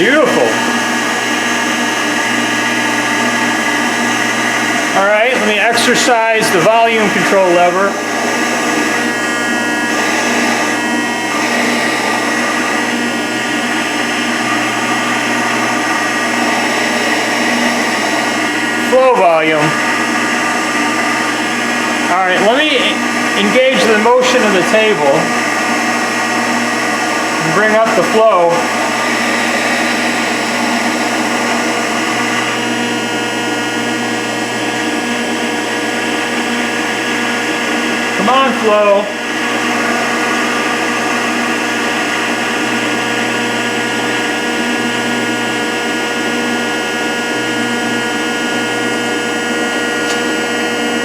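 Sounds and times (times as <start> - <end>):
hydraulic pump hum and whine: 0.0 - 51.0.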